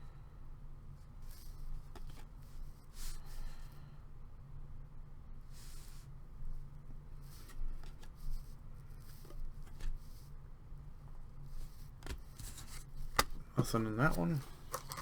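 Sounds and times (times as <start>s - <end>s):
low steady hum: 0.0s - 15.0s
trading cards rustling: 12.1s - 15.0s.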